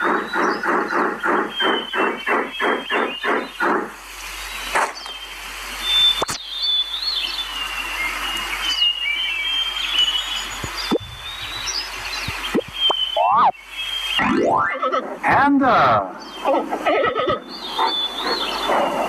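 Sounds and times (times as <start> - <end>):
birds chirping: 0.0 - 19.0
steady outdoor hiss: 0.0 - 19.0
sharp click: 6.2 - 6.4
fast even pulses: 14.2 - 16.1.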